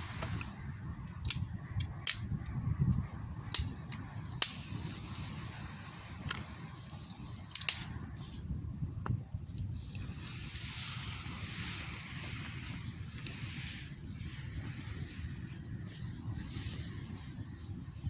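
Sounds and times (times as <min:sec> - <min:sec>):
campfire crackling and popping: 0:00.0 - 0:18.0
low wind rumble: 0:00.0 - 0:18.0.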